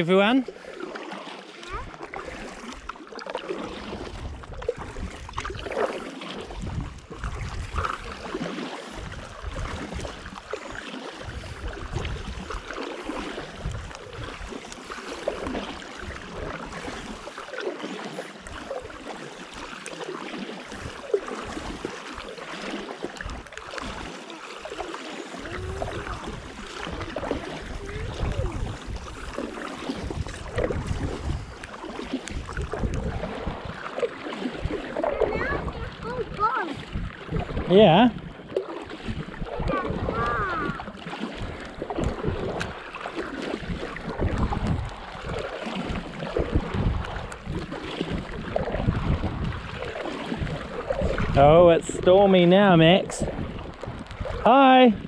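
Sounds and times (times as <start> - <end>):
paddle pulling through water: 0.0 - 55.0
water dripping and lapping: 0.0 - 55.0
wind gusts on microphone: 3.7 - 10.4, 11.2 - 14.6, 24.7 - 55.0.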